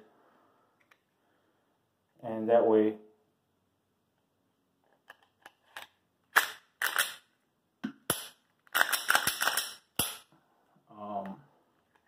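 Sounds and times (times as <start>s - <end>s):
pistol clicks and clacks: 5.1s - 7.3s, 8.1s - 10.3s.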